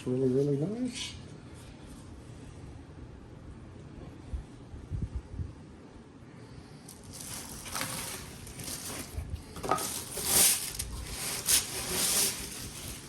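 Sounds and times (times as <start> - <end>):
packaging rustling and crinkling: 6.9 - 13.0.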